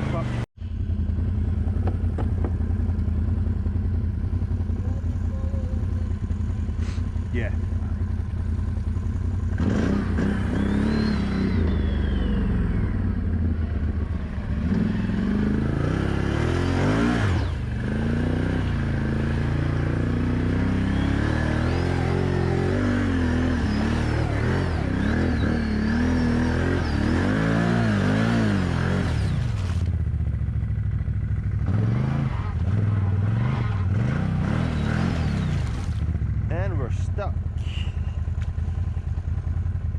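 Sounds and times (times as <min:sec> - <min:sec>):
atv engine revving: 0:00.0 - 0:39.9.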